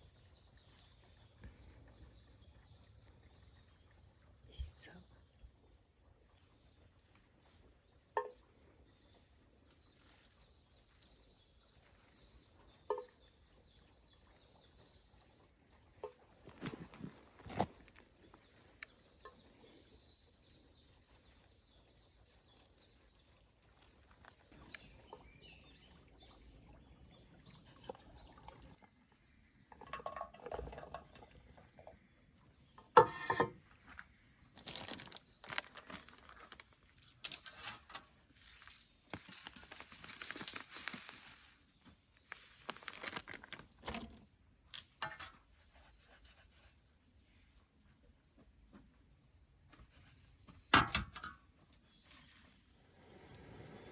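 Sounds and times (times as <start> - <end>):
rustling and crinkling handling: 15.7 - 24.8, 33.8 - 44.3.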